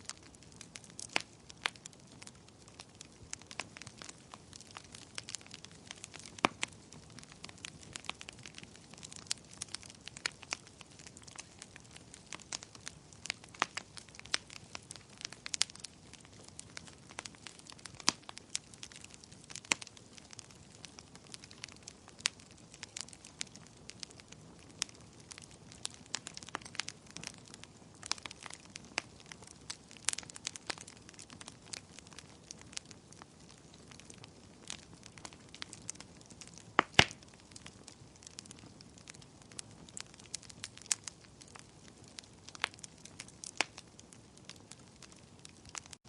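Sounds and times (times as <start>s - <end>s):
faint steady hiss: 0.0s - 31.6s
fire crackling: 0.0s - 46.0s.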